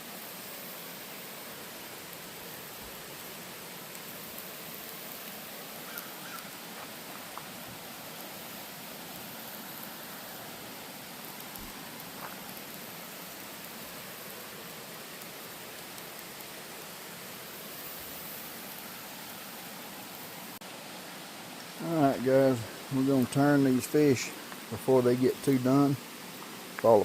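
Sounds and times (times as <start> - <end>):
fish sizzling in a pan: 0.0 - 27.0
faint ticks: 3.9 - 7.5.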